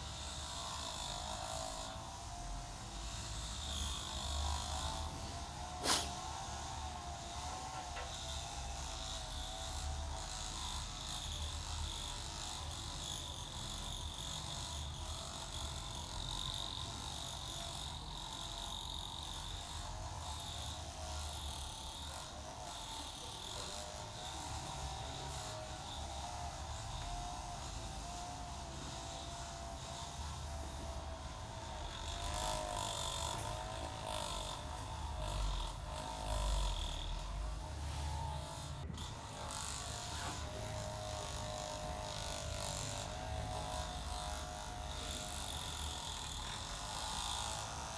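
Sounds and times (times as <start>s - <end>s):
hands rubbing skin and hair: 5.8s - 6.1s.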